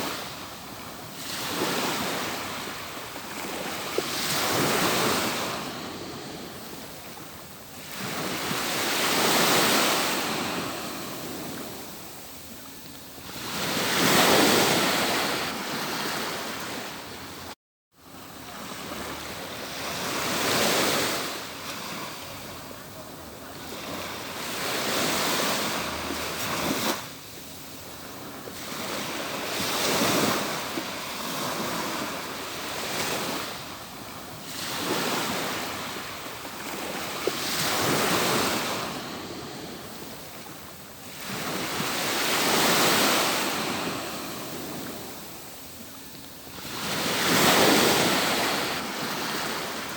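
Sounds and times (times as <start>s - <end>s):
surf breaking on a beach: 0.0s - 12.2s.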